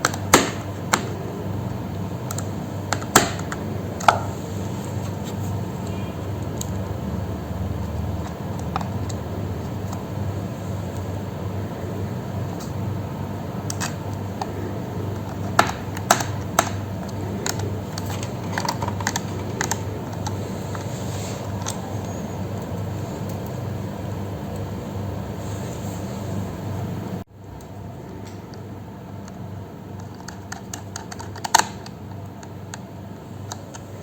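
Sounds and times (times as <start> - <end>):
laptop parts clicking: 0.0 - 1.2, 2.3 - 4.3, 7.8 - 10.1, 13.6 - 20.9, 30.0 - 32.9
steady low hum: 0.0 - 34.0.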